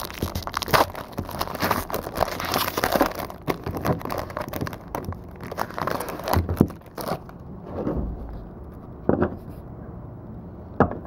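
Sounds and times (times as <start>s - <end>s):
plastic wrapping crinkling and tearing: 0.0s - 7.4s.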